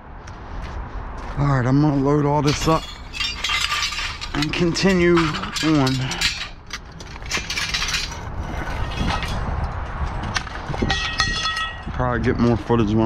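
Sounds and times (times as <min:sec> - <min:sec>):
scrap metal clanking: 0:02.4 - 0:12.0
metal piece ringing: 0:02.5 - 0:06.8, 0:10.8 - 0:12.0.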